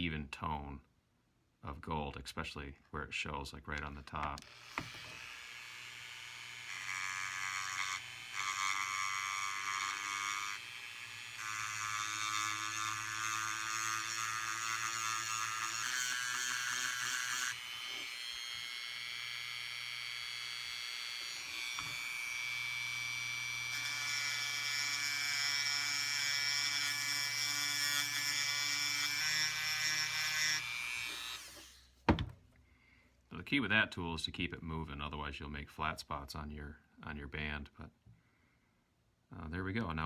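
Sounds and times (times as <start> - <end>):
rotary tool grinding metal: 4.4 - 31.9.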